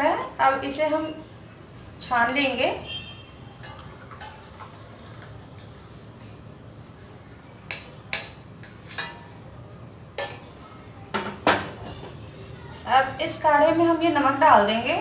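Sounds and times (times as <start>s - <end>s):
metal utensils clinking: 7.7s - 9.3s, 10.2s - 10.6s.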